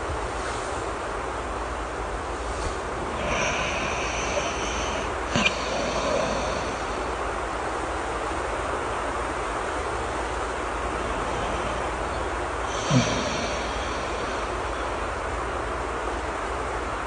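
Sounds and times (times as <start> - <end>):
steady rain: 0.0 - 17.0
person snoring: 3.0 - 7.2, 10.9 - 14.9.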